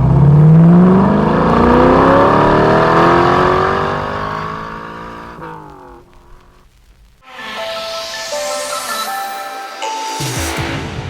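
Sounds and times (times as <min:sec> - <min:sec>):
car engine accelerating hard: 0:00.0 - 0:06.5.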